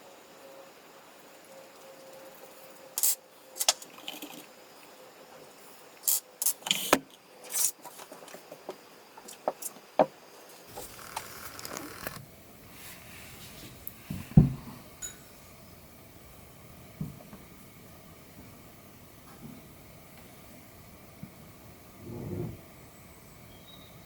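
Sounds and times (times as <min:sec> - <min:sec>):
small hard objects clicking: 0:03.0 - 0:04.4.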